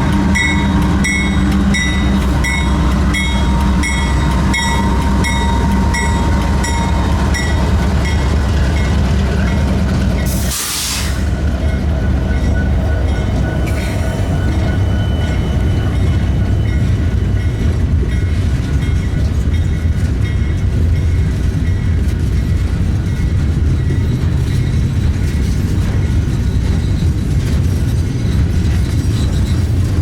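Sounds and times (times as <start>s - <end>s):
freight train rumbling: 0.0s - 30.0s.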